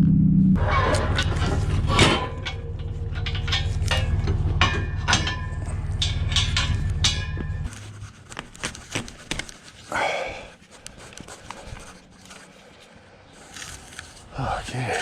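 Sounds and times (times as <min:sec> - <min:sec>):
low mechanical hum: 0:00.0 - 0:09.9.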